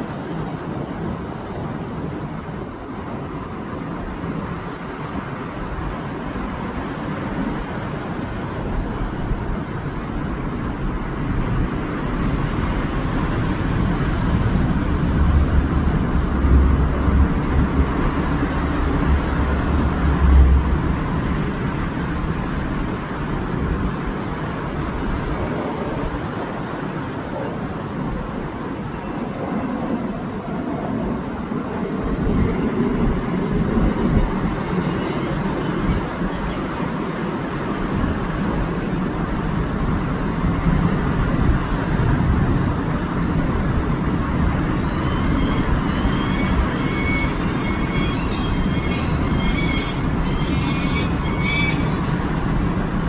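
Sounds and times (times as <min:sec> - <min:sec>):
passing vehicles rumble: 0:00.0 - 0:53.0
heavy low rumble: 0:13.3 - 0:34.8.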